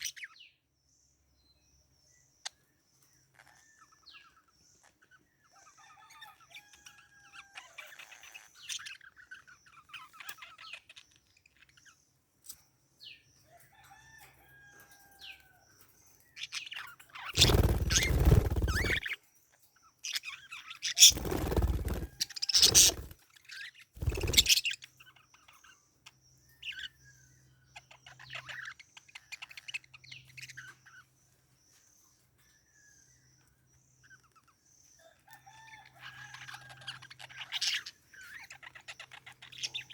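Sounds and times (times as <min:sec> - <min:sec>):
parakeets chirping: 0:17.2 - 0:19.1, 0:20.6 - 0:24.8.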